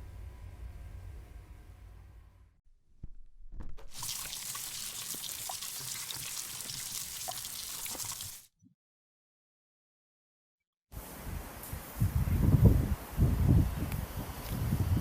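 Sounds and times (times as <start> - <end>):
water trickling: 3.9 - 8.5.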